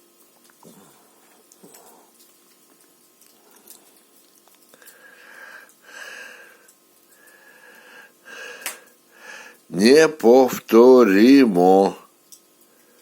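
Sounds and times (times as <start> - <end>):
campfire crackling: 0.0 - 10.4.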